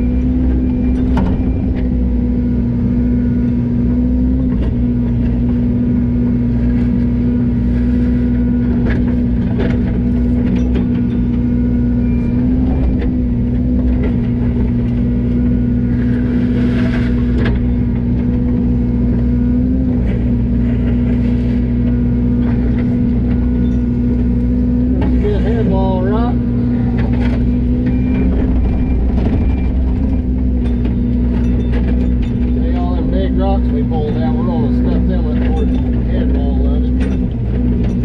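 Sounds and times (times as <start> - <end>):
excavator engine droning: 0.0 - 38.0
machine clanks: 27.0 - 38.0.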